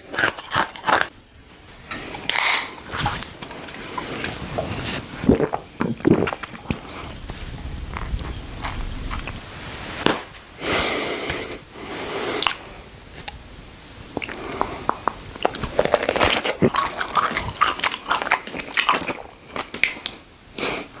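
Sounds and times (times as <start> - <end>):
crunchy food chewing: 0.0 - 1.1, 2.2 - 9.4, 14.2 - 20.2
hissing noise burst: 2.7 - 15.4.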